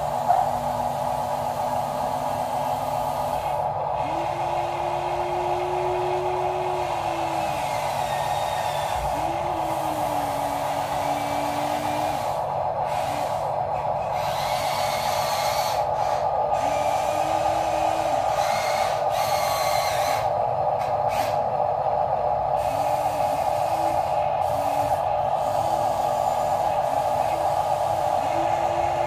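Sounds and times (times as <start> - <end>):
motor whine: 0.0 - 29.0
toy gear motors whirring: 7.3 - 21.4.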